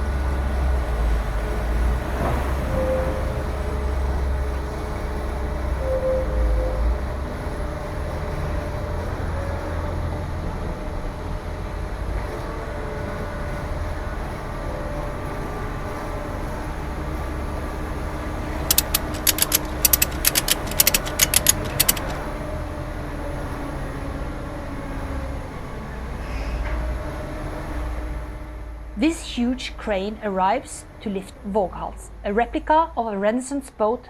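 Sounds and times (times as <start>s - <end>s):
sharp clicks: 18.7s - 22.2s.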